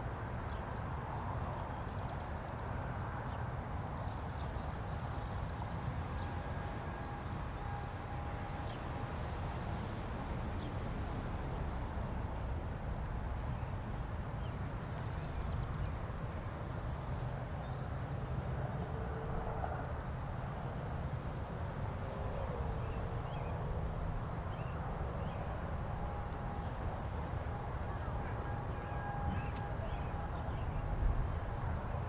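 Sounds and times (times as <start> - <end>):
distant wailing warning sirens: 5.4 - 13.4, 21.3 - 32.0
low outdoor rumble: 6.2 - 32.0
birds chirping: 28.1 - 30.9.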